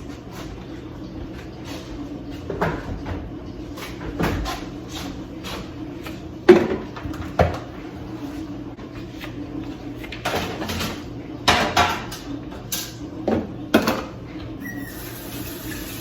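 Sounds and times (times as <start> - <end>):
kitchen knocks and bumps: 6.4 - 7.7, 10.2 - 12.1.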